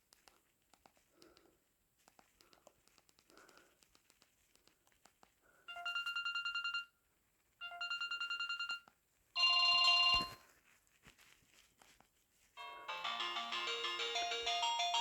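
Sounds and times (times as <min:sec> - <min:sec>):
trilling phone ringtone: 0:05.7 - 0:06.9, 0:07.6 - 0:08.8, 0:09.4 - 0:10.4, 0:12.6 - 0:15.0.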